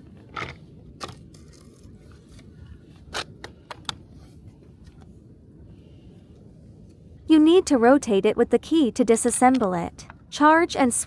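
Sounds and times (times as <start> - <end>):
light clicks and scrapes of parts: 0.0 - 5.1
low steady hum: 0.0 - 11.0.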